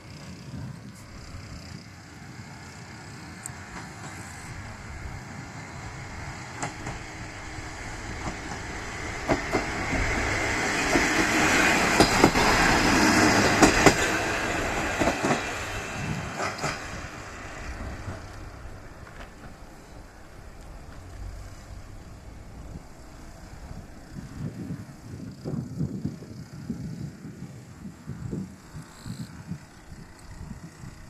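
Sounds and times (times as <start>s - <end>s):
diesel railcar passing: 0.0s - 31.0s
wheels clacking over rail joints: 3.4s - 25.1s.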